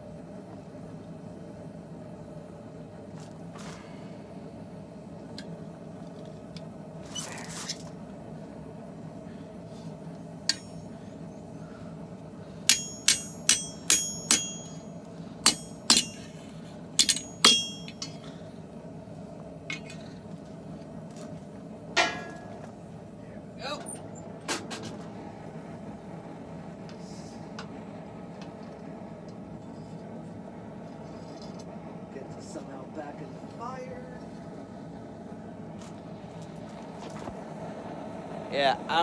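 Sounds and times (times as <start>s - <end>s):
hammer ringing on anvil: 10.5s - 10.9s, 12.7s - 18.4s, 19.7s - 20.0s, 22.0s - 22.6s.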